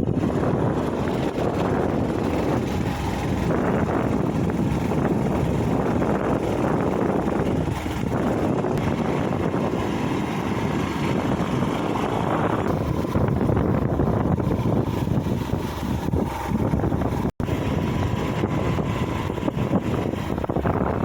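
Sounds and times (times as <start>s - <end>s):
steady low rumbling: 0.0s - 21.0s.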